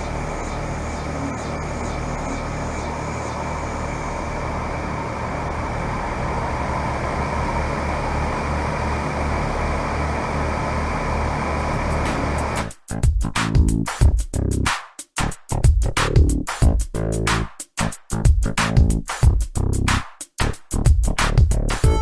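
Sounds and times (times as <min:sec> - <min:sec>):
compressor hum: 0:00.0 - 0:12.6
condenser fan running: 0:00.0 - 0:12.6.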